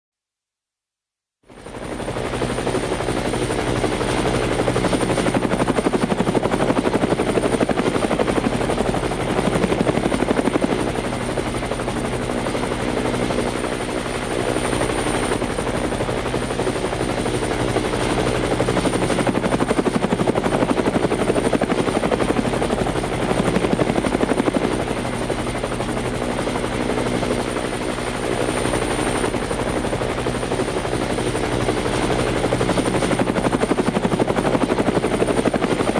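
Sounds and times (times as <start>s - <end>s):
helicopter rotor chopping: 1.5s - 35.9s.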